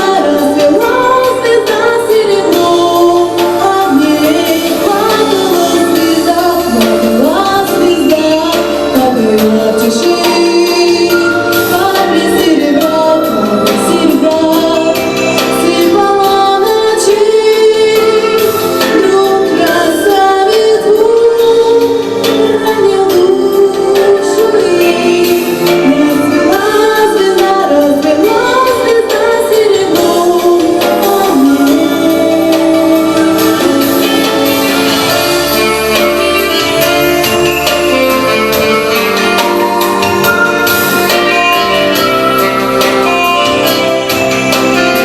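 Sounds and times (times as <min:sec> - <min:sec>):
instrumental accompaniment: 0:00.0 - 0:45.0
woman singing: 0:00.0 - 0:45.0.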